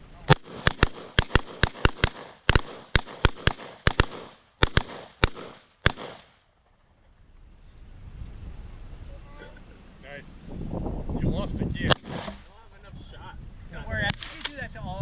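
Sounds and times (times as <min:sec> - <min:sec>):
shotgun bangs: 0:00.3 - 0:06.3, 0:11.8 - 0:12.5.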